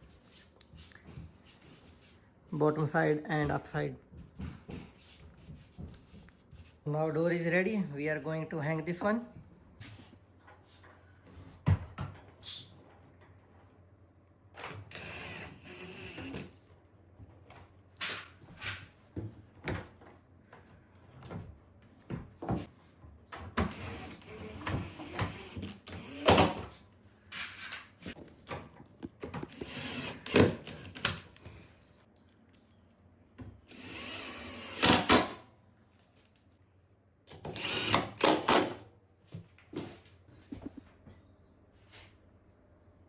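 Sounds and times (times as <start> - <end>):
cordless drill driving screws: 14.9 - 16.4, 23.7 - 26.6, 29.5 - 31.1, 33.7 - 35.1, 37.5 - 38.5.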